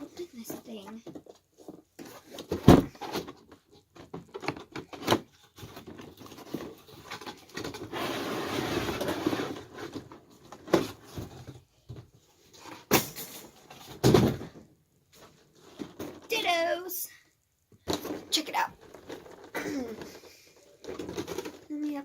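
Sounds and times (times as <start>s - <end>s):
packaging rustle: 17.9s - 22.0s.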